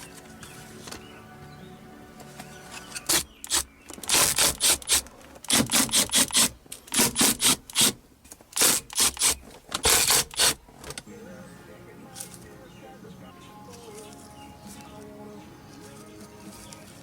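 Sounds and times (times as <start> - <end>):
quick scraping strokes: 2.7 - 8.0, 8.6 - 10.6.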